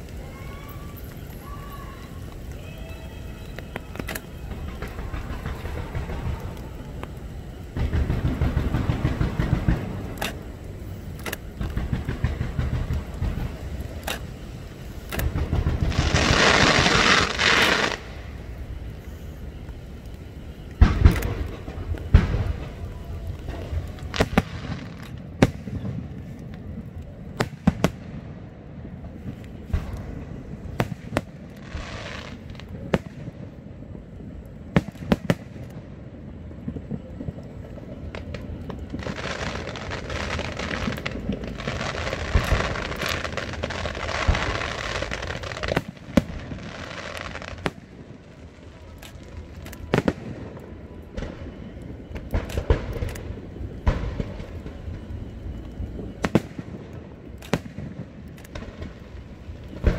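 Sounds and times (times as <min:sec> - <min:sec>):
fireworks bangs and pops: 0:00.0 - 0:59.9
fireworks crackling: 0:00.0 - 0:59.9.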